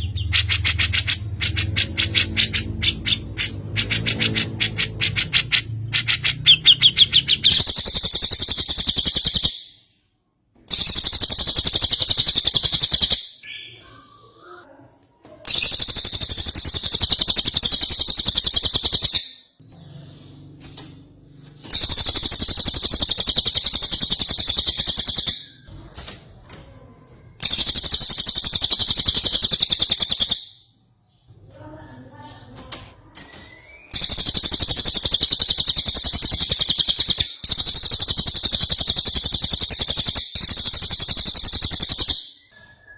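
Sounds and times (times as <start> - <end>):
rapid clicking bird notes: 0.0 - 9.6, 10.7 - 13.3, 15.5 - 19.4, 20.4 - 25.6, 27.4 - 30.5, 32.6 - 42.3
bird trilling fast and high: 0.0 - 9.9, 10.7 - 13.8, 15.5 - 20.6, 21.5 - 25.7, 27.4 - 30.7, 33.2 - 42.6.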